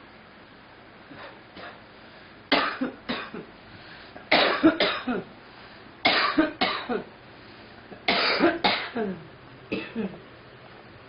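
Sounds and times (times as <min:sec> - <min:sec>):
girl coughing: 0:02.5 - 0:03.5, 0:04.3 - 0:05.3, 0:06.0 - 0:07.1, 0:08.1 - 0:10.2.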